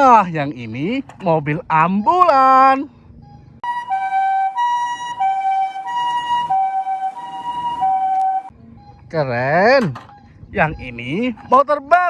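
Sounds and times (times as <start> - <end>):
toy electronic two-tone siren: 3.6 - 9.1.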